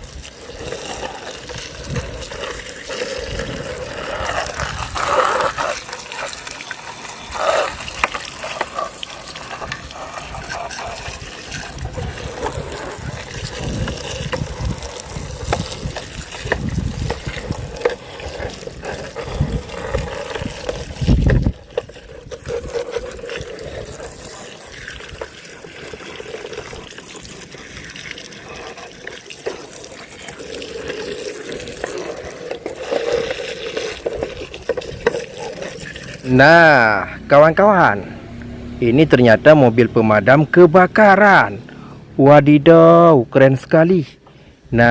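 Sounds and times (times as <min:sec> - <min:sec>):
running water splashing: 0:00.0 - 0:37.0.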